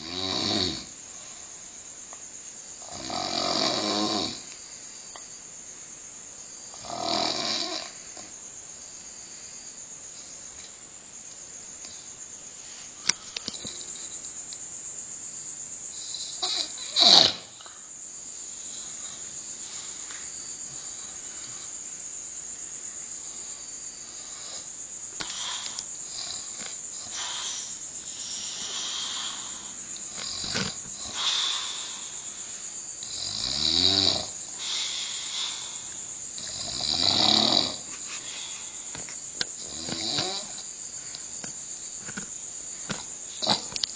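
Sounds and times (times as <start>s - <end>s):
man snoring: 0.0s - 1.0s, 2.8s - 4.5s, 6.8s - 8.0s, 16.0s - 17.6s, 24.2s - 32.3s, 33.0s - 37.9s, 39.6s - 40.6s.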